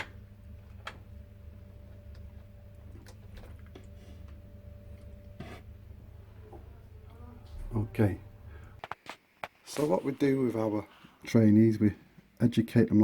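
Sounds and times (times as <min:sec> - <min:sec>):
low steady hum: 0:00.0 - 0:08.9.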